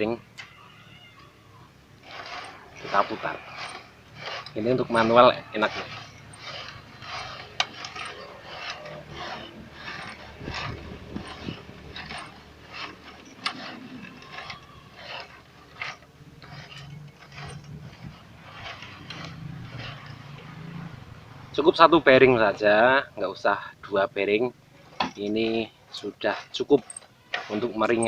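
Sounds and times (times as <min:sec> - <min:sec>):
machine clicks and scraping rattles: 0:01.8 - 0:23.0, 0:24.7 - 0:28.0.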